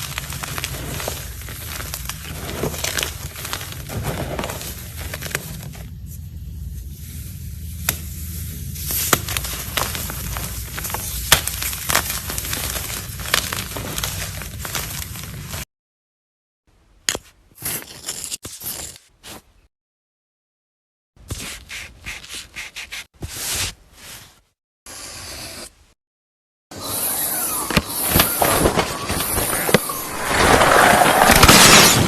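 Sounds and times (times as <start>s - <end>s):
close-up crackling and crinkling: 0.0s - 6.0s, 8.8s - 15.7s.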